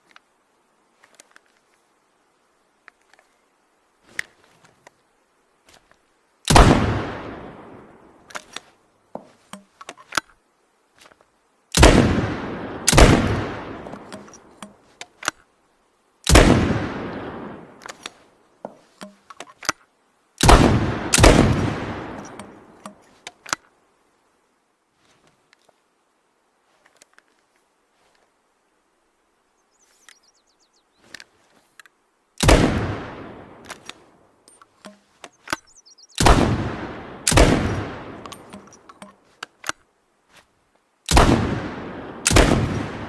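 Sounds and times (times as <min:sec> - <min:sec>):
shotgun blasts with echo: 0:06.5 - 0:07.8, 0:11.8 - 0:14.2, 0:16.3 - 0:17.8, 0:20.4 - 0:22.4, 0:32.4 - 0:33.6, 0:36.2 - 0:38.4, 0:41.1 - 0:43.0
small clicks and knocks: 0:17.8 - 0:19.9, 0:38.2 - 0:39.9.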